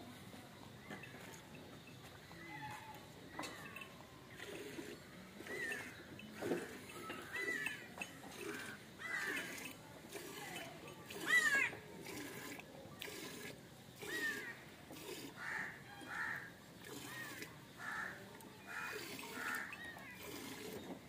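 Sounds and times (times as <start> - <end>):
faint farmyard background: 0.0 - 21.0
crows cawing: 8.4 - 9.6, 15.4 - 16.5, 17.2 - 19.8.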